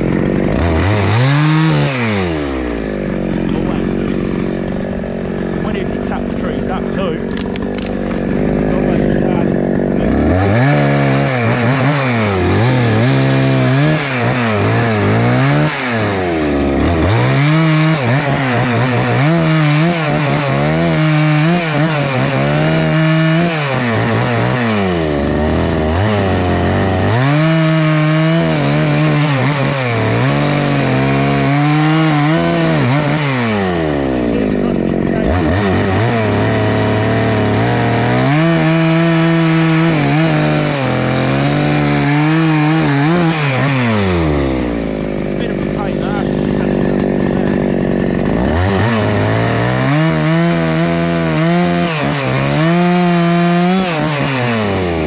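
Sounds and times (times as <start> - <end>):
chainsaw revving and cutting wood: 0.0 - 55.0.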